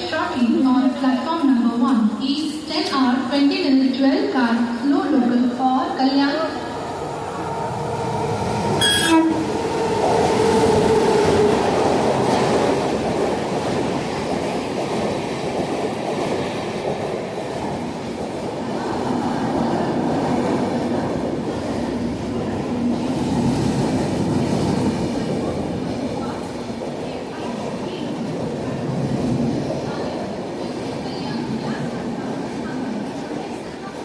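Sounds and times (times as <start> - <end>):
train coaches rumbling: 0.0 - 34.0
train horn: 8.8 - 9.5.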